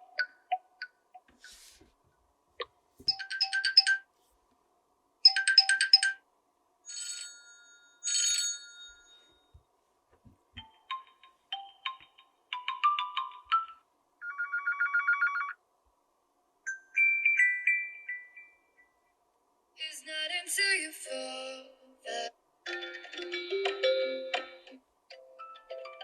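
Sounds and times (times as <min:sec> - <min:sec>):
phone ringtone chime melodies: 0:03.1 - 0:04.0, 0:05.3 - 0:06.2, 0:16.7 - 0:18.9.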